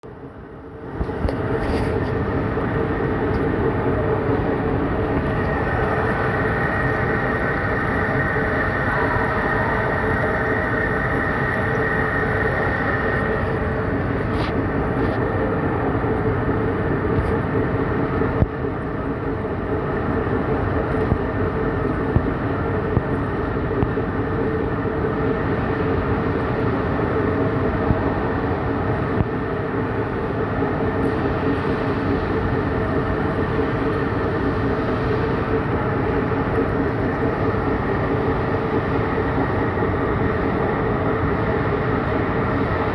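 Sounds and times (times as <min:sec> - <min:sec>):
faint steady hum: 0:00.0 - 0:42.9
lathe mechanical drone: 0:00.1 - 0:42.9
lathe humming: 0:01.3 - 0:21.9.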